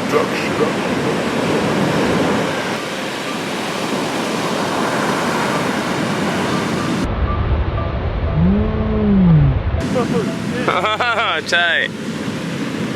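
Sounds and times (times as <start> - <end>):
steady rushing noise: 0.1 - 12.9
dull low rumble: 7.1 - 10.4.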